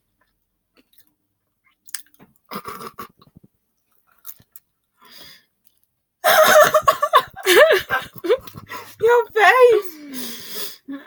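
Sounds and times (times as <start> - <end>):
person chewing food: 0.0 - 4.8, 8.1 - 9.0.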